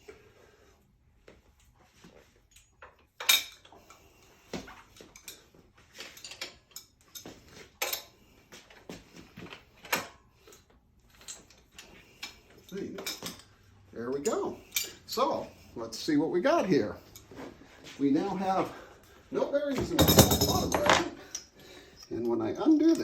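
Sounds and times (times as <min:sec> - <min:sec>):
metal tools clinking and knocking: 0:02.5 - 0:04.0, 0:04.7 - 0:08.2, 0:09.8 - 0:15.2, 0:19.7 - 0:21.5, 0:22.1 - 0:23.0.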